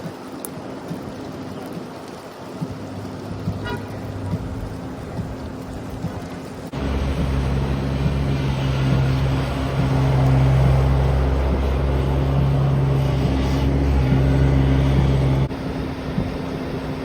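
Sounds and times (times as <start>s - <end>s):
noisy wash: 0.0s - 17.0s
vehicle engine humming: 2.6s - 17.0s.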